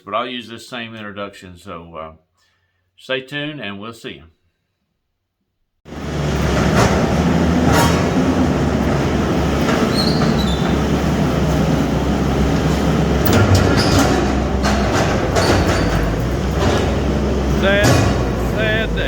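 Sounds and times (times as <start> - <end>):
metal clanks: 5.9 - 19.0
skid steer diesel drone: 5.9 - 19.0
brief high squeal: 9.9 - 10.8.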